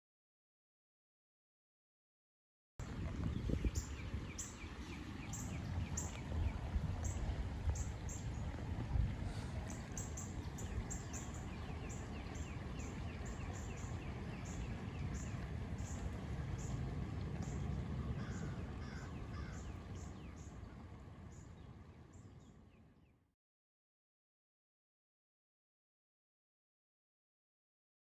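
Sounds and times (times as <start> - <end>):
wind rumble: 2.8 - 21.8
distant traffic: 2.8 - 23.0
birds chirping: 2.9 - 8.6, 9.3 - 16.8, 17.4 - 23.1.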